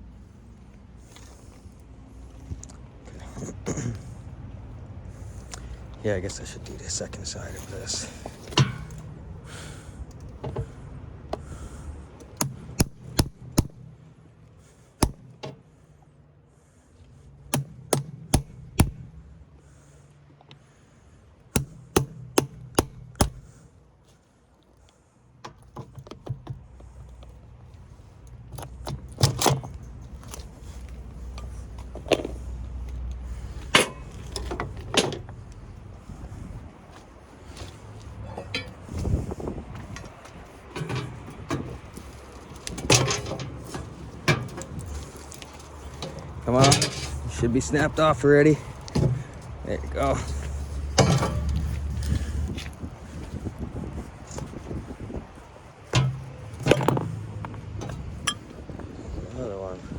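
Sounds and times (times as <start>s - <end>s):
hand tool striking battery: 12.3s - 14.0s, 15.0s - 15.6s, 17.5s - 19.2s, 21.5s - 23.5s, 56.0s - 57.2s.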